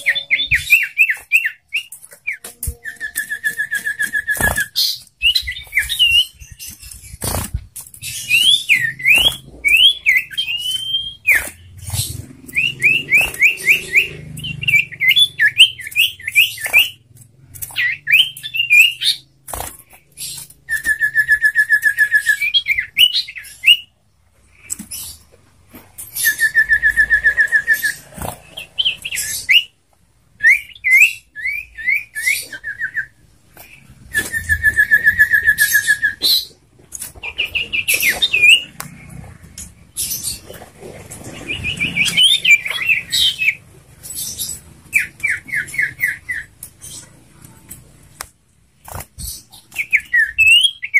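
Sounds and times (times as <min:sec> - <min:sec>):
bird singing whistled notes: 0:00.0 - 0:07.1, 0:08.0 - 0:17.0, 0:17.7 - 0:19.3, 0:26.1 - 0:29.8, 0:30.4 - 0:36.6, 0:49.4 - 0:50.9
bird rattling trills: 0:00.0 - 0:23.7.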